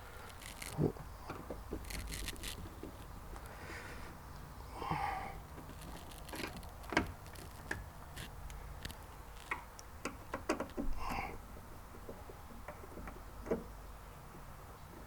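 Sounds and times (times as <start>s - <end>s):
rubbing sounds: 1.7s - 3.2s.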